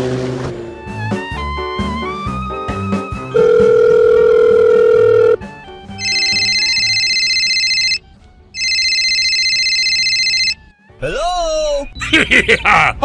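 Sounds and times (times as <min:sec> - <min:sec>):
telephone ringing: 0:03.4 - 0:05.4, 0:06.0 - 0:08.0, 0:08.6 - 0:10.6.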